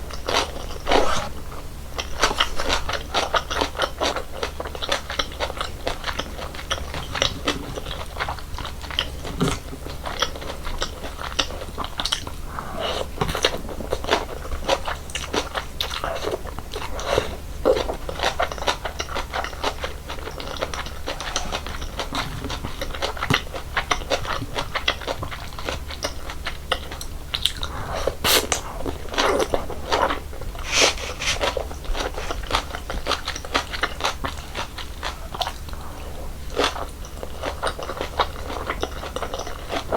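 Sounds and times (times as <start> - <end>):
chewing and crunching noodles: 0.0 - 39.9.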